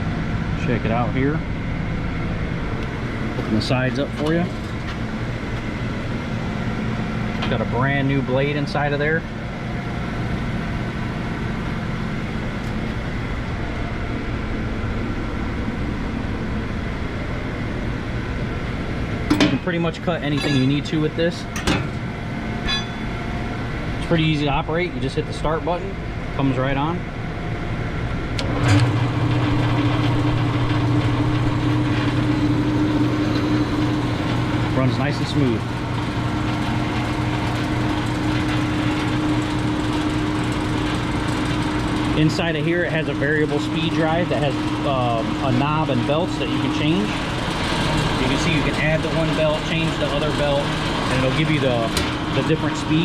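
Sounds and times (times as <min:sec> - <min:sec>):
machinery hum: 0:00.0 - 0:53.0
faint high whine: 0:22.4 - 0:25.0.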